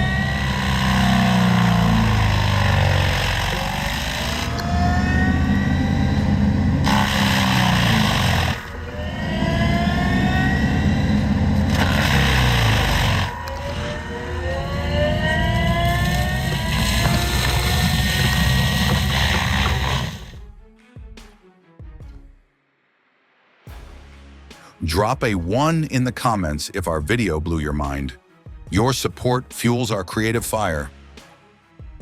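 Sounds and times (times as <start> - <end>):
forestry mulcher whine: 0.0 - 20.4
loader engine rumbling: 0.0 - 20.4.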